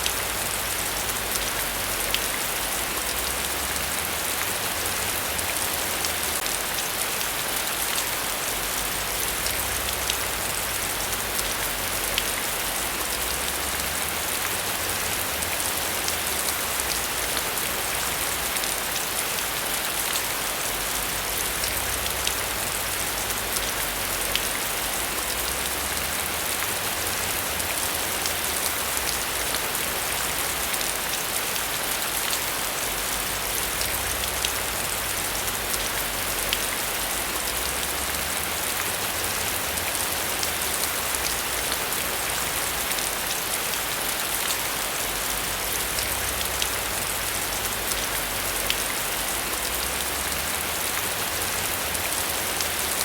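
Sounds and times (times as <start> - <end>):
heavy rain hissing: 0.0 - 53.0.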